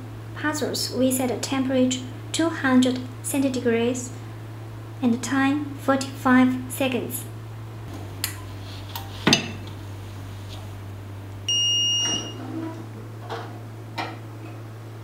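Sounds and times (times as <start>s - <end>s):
steady low hum: 0.0s - 15.0s
electronic beep: 11.5s - 12.4s.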